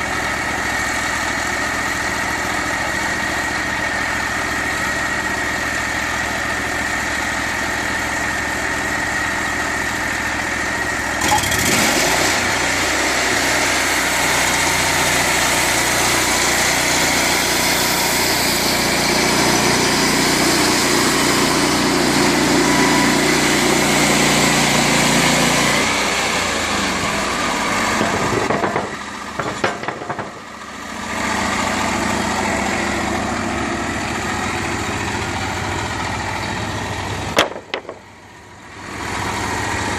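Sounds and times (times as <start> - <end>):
sawmill engine running: 0.0 - 39.9
band blade cutting a log: 37.4 - 38.1.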